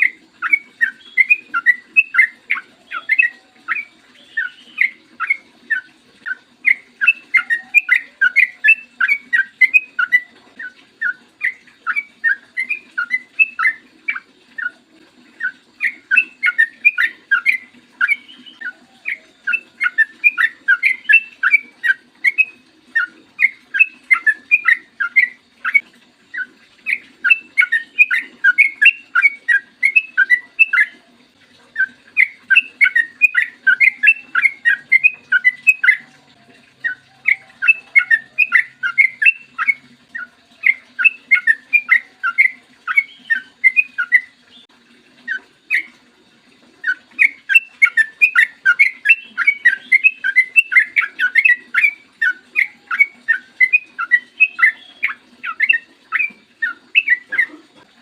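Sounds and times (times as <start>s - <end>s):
bird singing chattering phrases: 0.0s - 31.0s, 31.7s - 44.7s, 46.8s - 57.9s.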